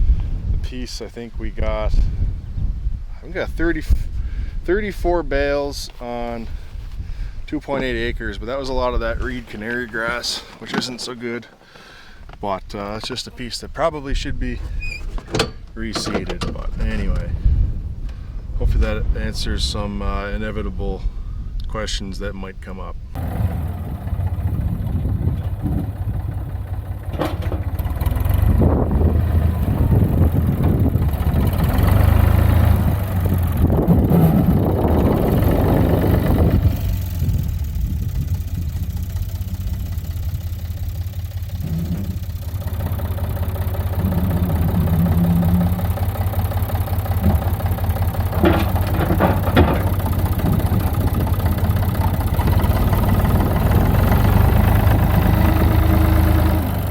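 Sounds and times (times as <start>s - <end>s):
tractor diesel engine rumbling: 3.2s - 19.8s, 23.1s - 56.9s
machinery knocks: 47.2s - 50.8s.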